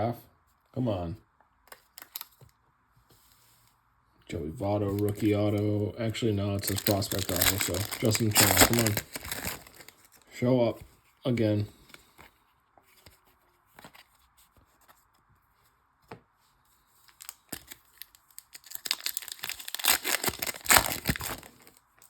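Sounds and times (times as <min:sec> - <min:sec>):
foil wrapper tearing and crinkling: 0:01.9 - 0:02.3, 0:04.9 - 0:05.7, 0:06.5 - 0:10.2, 0:17.1 - 0:21.8.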